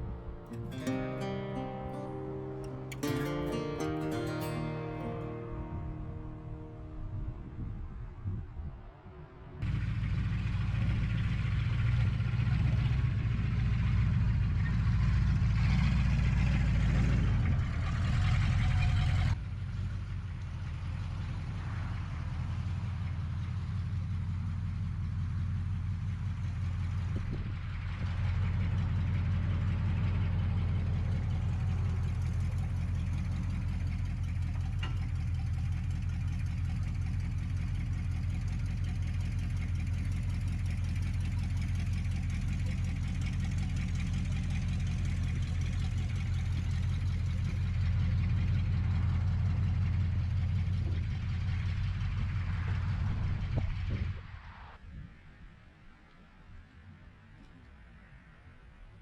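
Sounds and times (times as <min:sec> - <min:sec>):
engine idling: 0:09.6 - 0:54.2.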